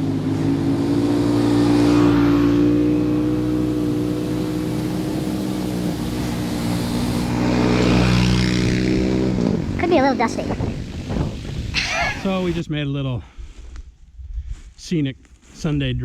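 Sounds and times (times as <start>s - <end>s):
vehicle engine hum while driving: 0.0s - 11.5s
rushing noise: 1.4s - 12.6s.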